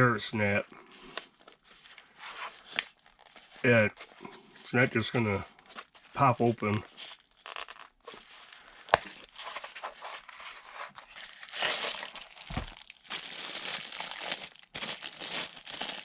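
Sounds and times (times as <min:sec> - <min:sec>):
plastic packaging crinkling: 0:01.0 - 0:04.2, 0:06.9 - 0:16.0.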